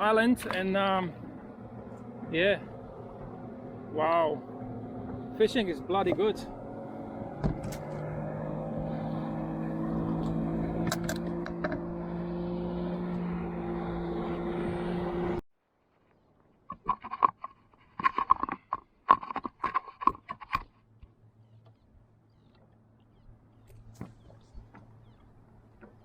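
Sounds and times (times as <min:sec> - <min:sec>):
outboard motor running: 0:00.0 - 0:15.4, 0:21.4 - 0:26.0.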